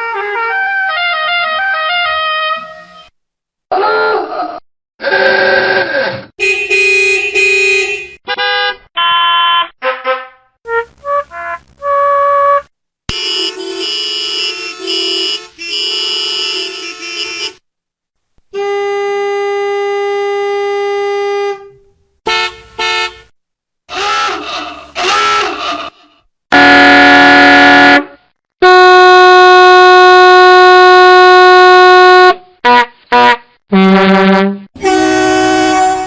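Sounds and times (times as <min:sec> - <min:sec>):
multi-tone air horn chords: 0:06.4 - 0:17.6, 0:18.5 - 0:23.3, 0:23.9 - 0:36.0
musical air horn tunes: 0:08.3 - 0:17.6, 0:26.5 - 0:36.0
short horn blasts: 0:13.1 - 0:17.6, 0:26.5 - 0:36.0.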